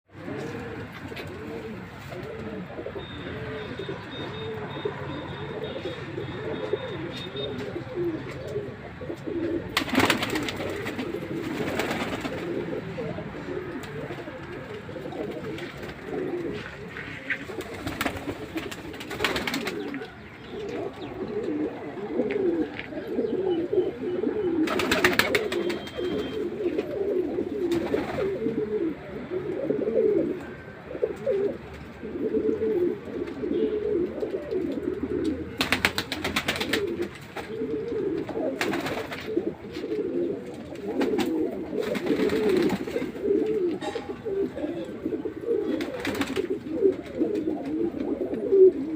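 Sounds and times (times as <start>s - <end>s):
pigeons cooing: 0.1s - 48.9s.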